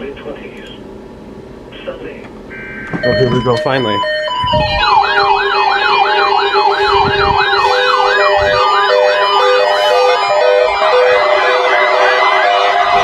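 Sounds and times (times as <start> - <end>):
alternating two-note beep: 2.5 - 12.0
warbling siren alarm: 2.5 - 13.0.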